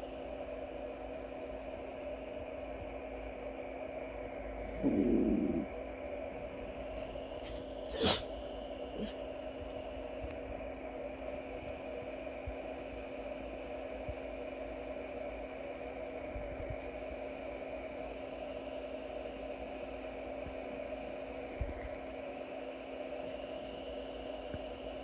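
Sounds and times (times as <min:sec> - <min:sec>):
low hum: 0:03.6 - 0:07.7.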